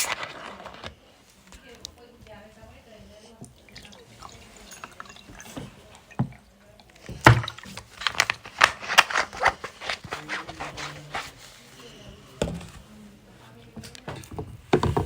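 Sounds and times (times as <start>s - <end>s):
crunching while eating: 0.0s - 1.4s, 6.8s - 11.9s.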